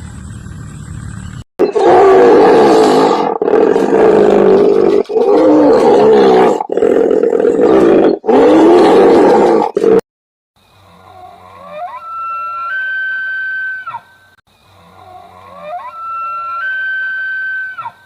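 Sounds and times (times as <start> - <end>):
big cat roaring: 1.6 - 10.0.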